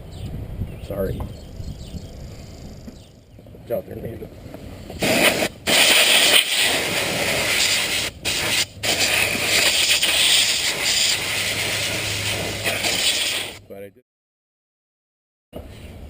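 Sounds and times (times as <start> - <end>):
loud rushing hiss: 5.0 - 13.6.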